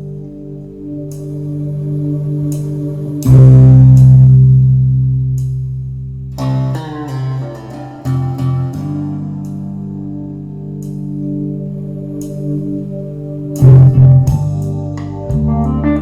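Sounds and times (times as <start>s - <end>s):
plucked bass and guitar music: 3.2s - 16.0s.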